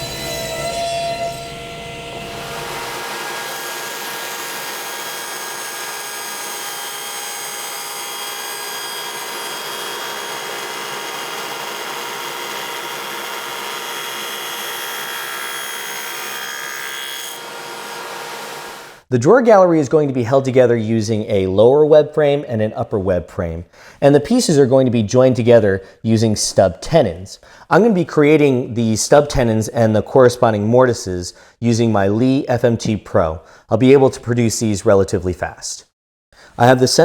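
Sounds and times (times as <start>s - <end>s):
power saw cutting wood: 0.0s - 19.1s.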